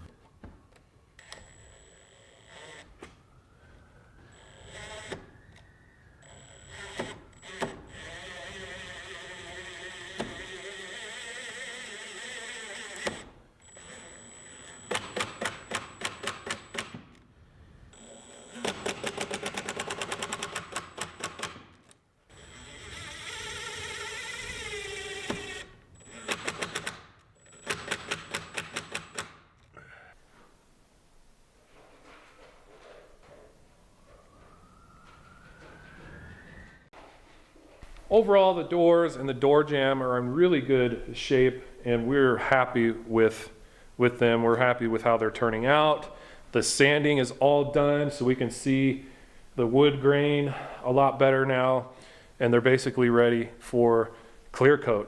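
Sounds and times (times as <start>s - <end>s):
impact driver whining and hammering: 4.4s - 17.2s, 18.0s - 30.1s.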